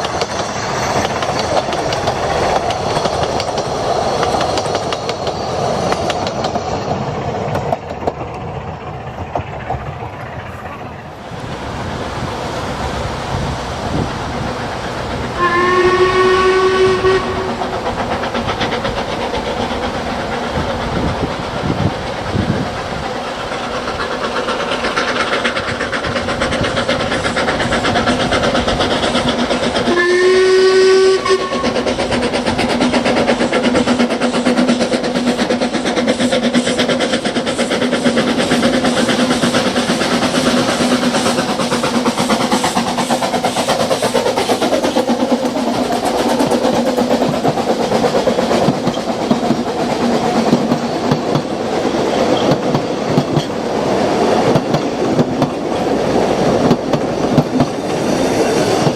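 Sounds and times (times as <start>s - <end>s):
train running and rail clatter: 0.0s - 58.9s
steam locomotive whistle blasts: 15.3s - 17.6s, 29.9s - 31.8s.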